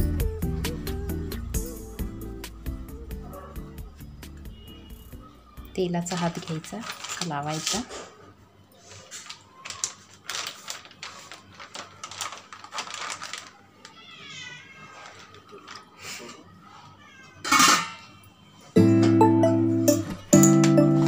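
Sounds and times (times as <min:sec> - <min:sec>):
plastic sheets crinkling: 0:05.8 - 0:08.1, 0:08.8 - 0:16.0.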